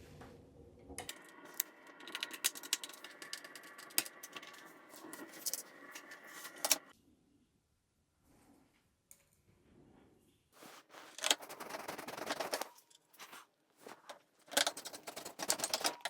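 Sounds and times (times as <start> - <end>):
steady hum: 0.0 - 6.9
metallic clicks and rattles: 1.0 - 6.9, 11.1 - 16.0.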